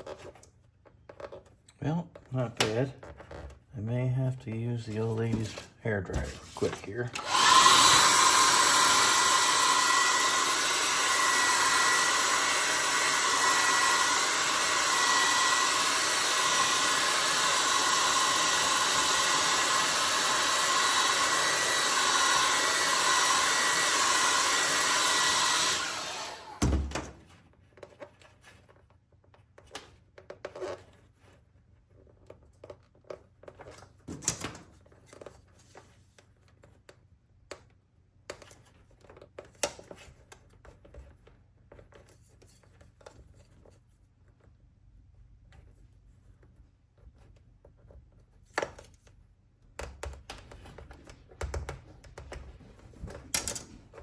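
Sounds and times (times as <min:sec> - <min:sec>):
hair dryer blowing: 0:06.3 - 0:27.0.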